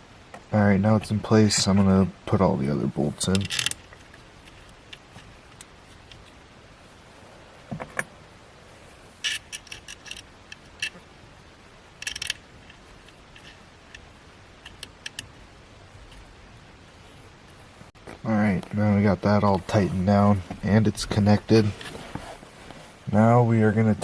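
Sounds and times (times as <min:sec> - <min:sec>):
metal bolts and tool rattling: 0:03.2 - 0:06.3, 0:09.2 - 0:11.0, 0:12.0 - 0:15.3.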